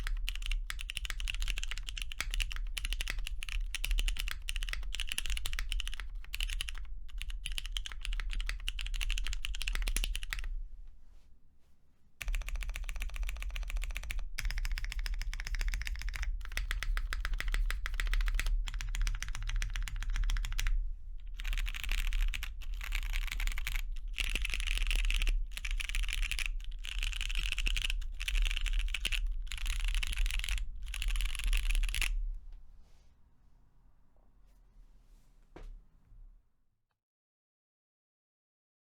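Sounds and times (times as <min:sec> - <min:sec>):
fast mechanical keyboard typing: 0:00.0 - 0:10.5, 0:12.2 - 0:32.1.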